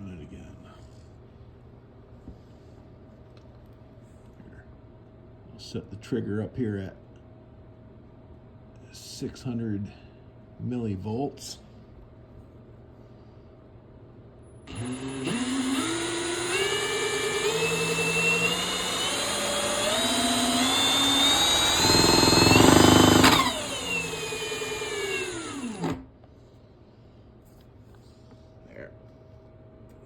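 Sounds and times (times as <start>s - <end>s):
electric drill spinning alternator: 14.7s - 26.1s.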